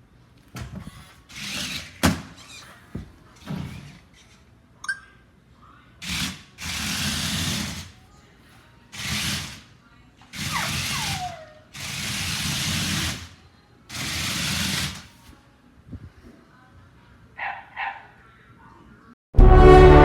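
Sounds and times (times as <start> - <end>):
short electronic chirps: 4.8 - 5.1.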